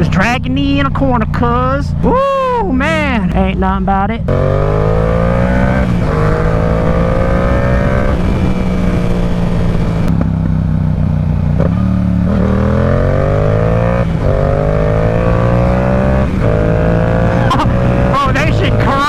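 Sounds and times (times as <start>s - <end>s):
motorcycle engine accelerating: 0.0s - 19.0s
wind rush on microphone: 4.6s - 10.5s.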